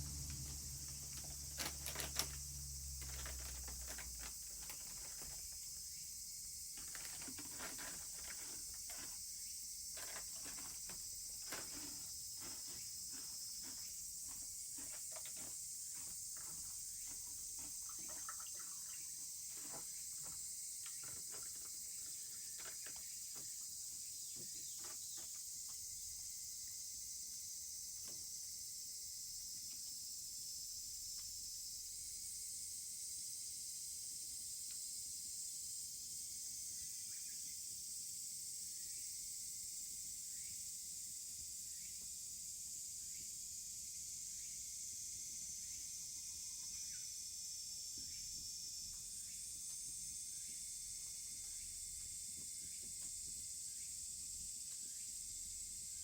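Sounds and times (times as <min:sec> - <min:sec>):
wood campfire crackling: 0:00.0 - 0:05.5
insects droning: 0:00.0 - 0:56.0.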